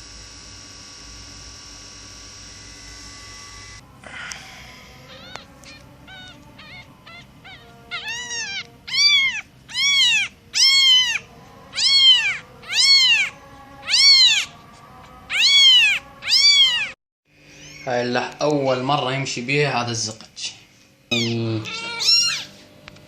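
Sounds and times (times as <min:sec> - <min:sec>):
cat meowing: 0:05.0 - 0:17.0, 0:21.1 - 0:22.6.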